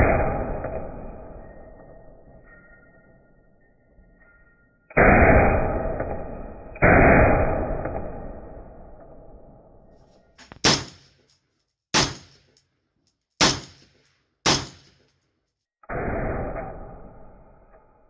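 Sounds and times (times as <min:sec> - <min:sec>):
rifle shots with ringing tail: 0:04.9 - 0:09.0, 0:10.5 - 0:11.1, 0:11.9 - 0:12.5, 0:13.4 - 0:15.0.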